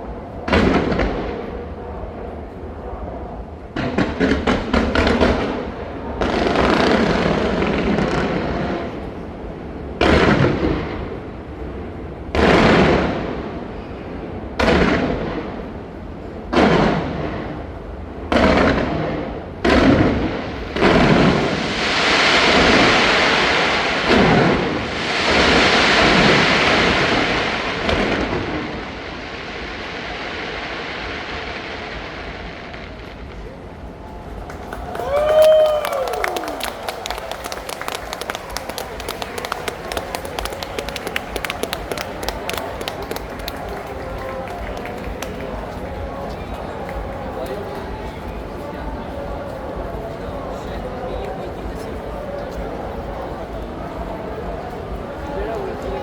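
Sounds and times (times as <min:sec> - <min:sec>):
fireworks cracking and bursting: 0:00.4 - 0:01.8, 0:03.7 - 0:56.0.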